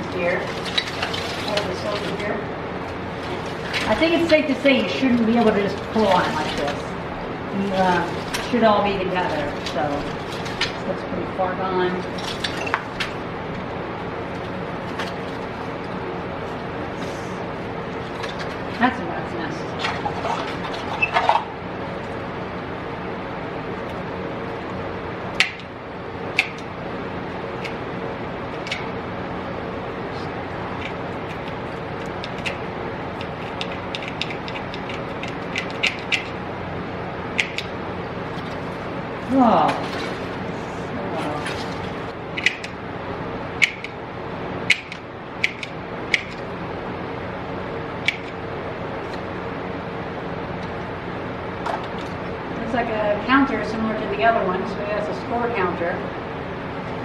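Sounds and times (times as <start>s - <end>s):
steady background hum: 0.0s - 57.0s.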